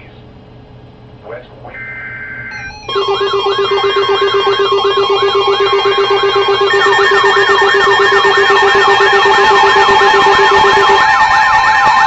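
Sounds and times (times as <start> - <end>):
siren-like sweep: 1.8 - 12.0
steady alarm tone: 1.8 - 12.0
pulsing low beep: 2.6 - 11.5
higher steady tone: 2.9 - 12.0.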